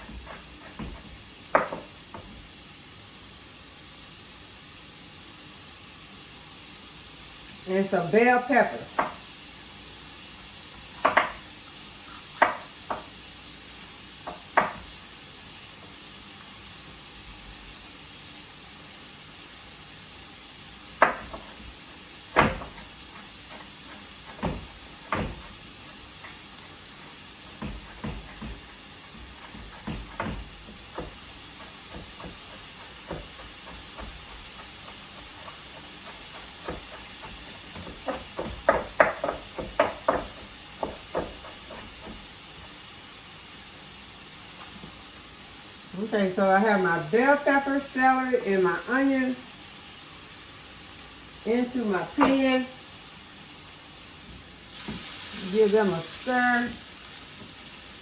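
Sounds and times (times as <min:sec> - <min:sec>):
vegetables sizzling in a pan: 0:00.0 - 0:58.0
utensil knocking against pan: 0:11.0 - 0:11.4, 0:14.3 - 0:14.8, 0:29.4 - 0:42.2.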